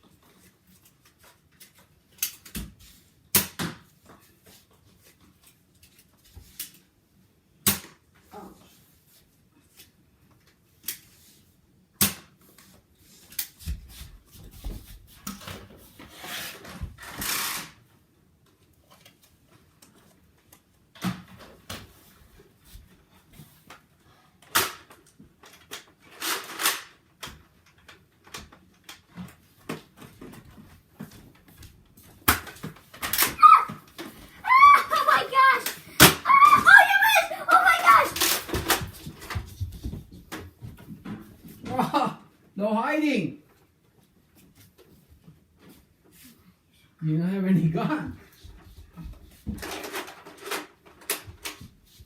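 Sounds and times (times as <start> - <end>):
toy blaster clicks and knocks: 17.1 - 17.7, 24.5 - 27.0, 34.8 - 38.8.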